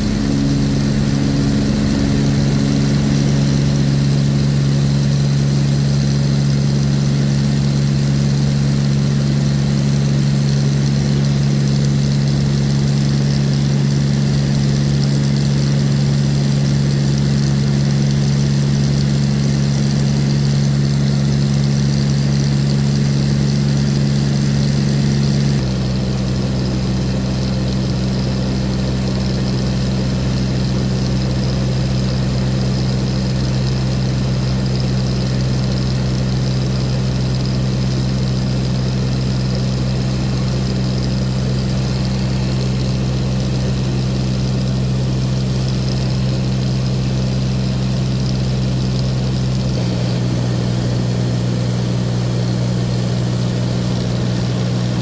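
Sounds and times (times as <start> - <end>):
aircraft engine and propeller drone: 0.0 - 55.0.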